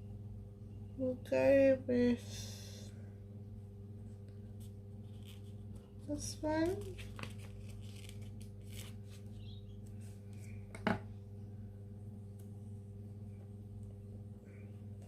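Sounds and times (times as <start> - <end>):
low electrical hum: 0.0 - 15.0
paper stickers scratching and clicking: 6.6 - 9.3.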